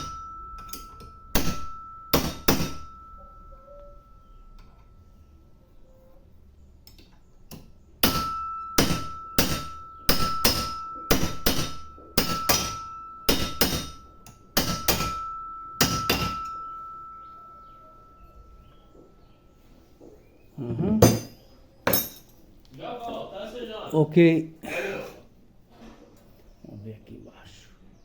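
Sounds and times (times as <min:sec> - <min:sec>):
hammer striking metal: 0:00.0 - 0:05.0, 0:06.9 - 0:19.1, 0:21.0 - 0:22.3.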